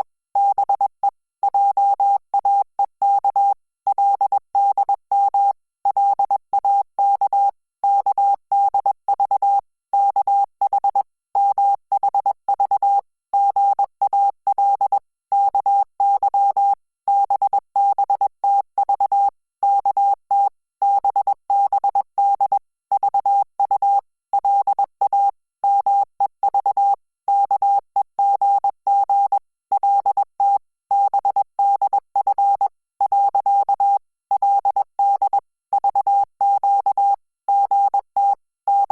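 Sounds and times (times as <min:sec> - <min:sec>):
morse code beeps: 0:04.1 - 0:38.9.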